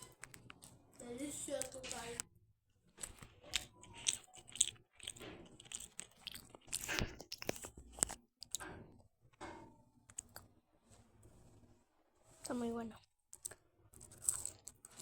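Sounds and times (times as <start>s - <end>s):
person chewing crunchy food: 2.9s - 8.6s, 13.3s - 15.0s.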